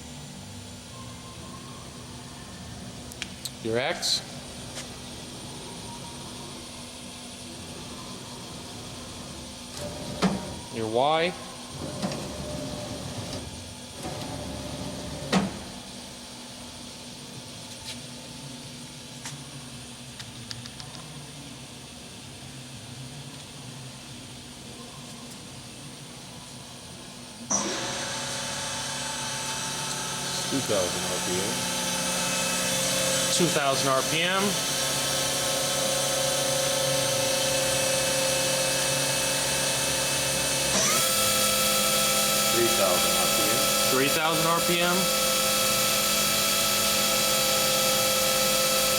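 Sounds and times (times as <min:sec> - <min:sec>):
machine humming: 0:00.0 - 0:15.9, 0:27.4 - 0:48.9
machine stopping clunk: 0:09.2 - 0:10.6, 0:11.7 - 0:15.8, 0:27.5 - 0:31.0, 0:31.6 - 0:44.2
machine axis whining: 0:27.5 - 0:48.9.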